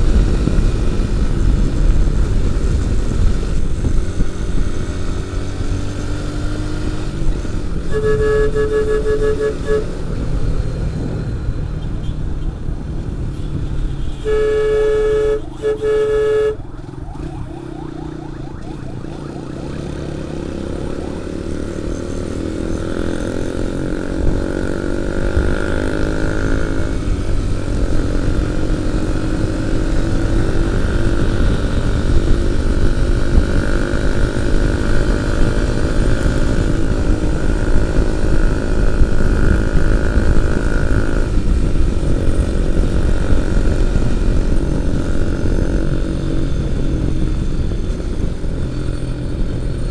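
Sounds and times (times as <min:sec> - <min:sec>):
motorcycle engine accelerating: 0:00.0 - 0:11.8, 0:14.2 - 0:49.9
horn blasts: 0:07.8 - 0:10.2, 0:13.3 - 0:17.9.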